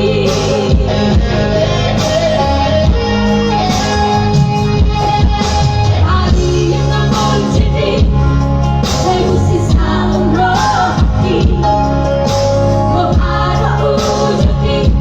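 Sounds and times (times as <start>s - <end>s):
woman singing: 0.0s - 2.2s, 6.0s - 12.1s, 12.9s - 15.0s
instrumental accompaniment: 0.0s - 15.0s.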